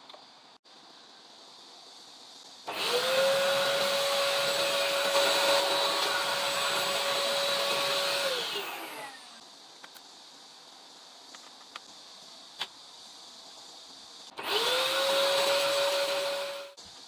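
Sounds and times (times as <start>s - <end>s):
small electric motor whining: 2.7s - 9.4s, 14.4s - 16.8s.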